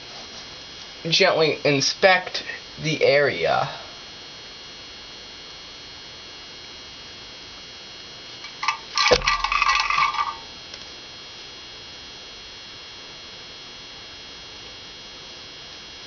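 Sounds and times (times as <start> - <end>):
metal tools clattering: 8.5 - 10.4.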